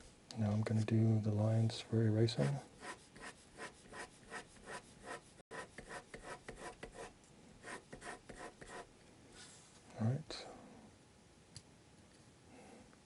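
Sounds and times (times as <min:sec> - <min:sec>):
pencil scratching on paper: 0:02.4 - 0:08.9.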